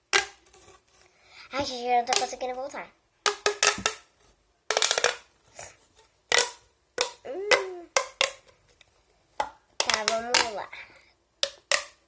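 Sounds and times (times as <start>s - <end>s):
plastic tube popping: 0.0s - 0.5s, 1.6s - 2.4s, 3.2s - 4.1s, 4.7s - 5.3s, 6.3s - 8.6s, 9.4s - 10.6s, 11.4s - 12.0s.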